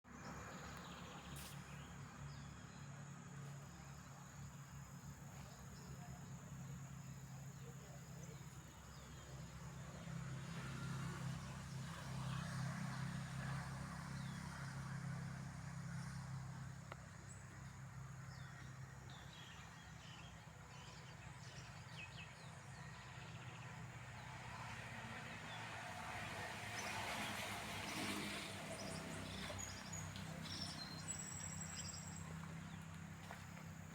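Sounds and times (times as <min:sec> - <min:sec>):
low rumble of distant traffic: 0:00.0 - 0:33.9.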